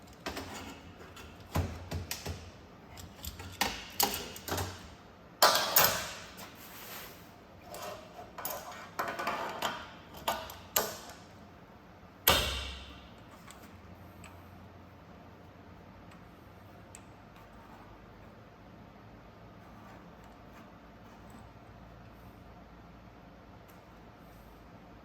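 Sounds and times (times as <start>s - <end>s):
metal parts clicking and clanking: 0.0s - 6.8s, 7.6s - 11.3s.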